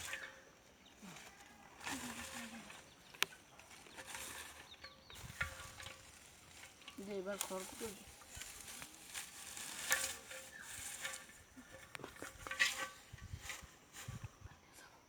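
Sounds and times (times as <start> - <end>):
dry straw and twigs crackling: 0.0 - 15.0
twigs snapping: 1.8 - 12.5.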